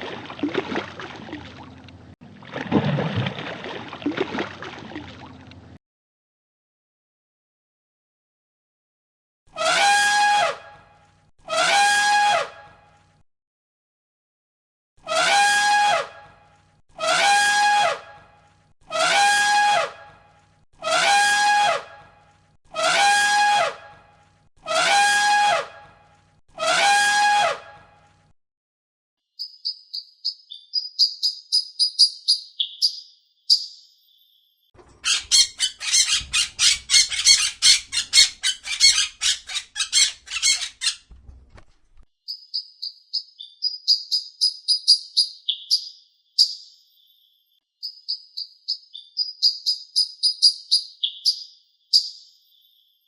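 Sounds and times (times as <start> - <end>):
birds chirping and squawking: 34.8 - 41.2
loud pitched animal calls: 35.0 - 41.1.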